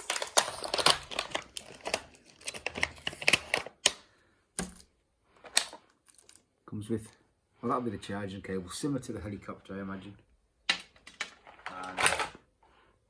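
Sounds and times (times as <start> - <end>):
toy packaging crinkling: 0.0 - 3.9, 5.4 - 6.4.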